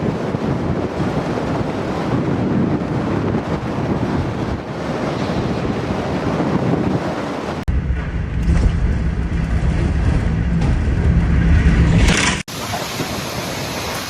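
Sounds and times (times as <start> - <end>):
strong wind buffeting microphone: 0.0 - 14.0
deep rumble: 7.6 - 12.5.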